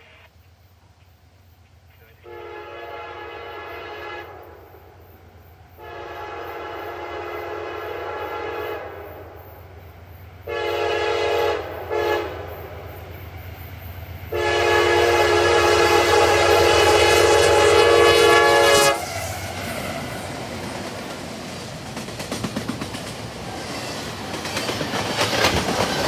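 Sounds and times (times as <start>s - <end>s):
locomotive air horn blasts: 2.2s - 5.0s, 5.8s - 9.4s, 10.4s - 12.9s, 14.3s - 19.3s.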